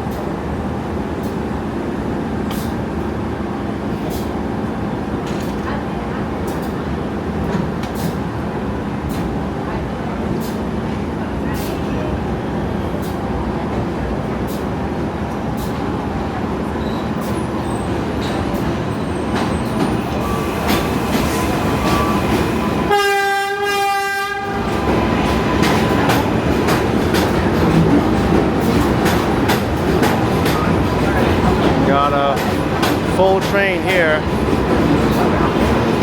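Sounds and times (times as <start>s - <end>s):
subway train rumbling on rails: 0.0s - 36.0s
train horn: 22.8s - 24.8s.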